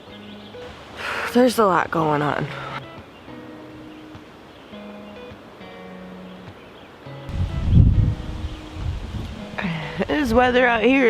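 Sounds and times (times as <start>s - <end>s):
faint background music: 0.0s - 11.0s
wind gusting against microphone: 7.3s - 11.0s.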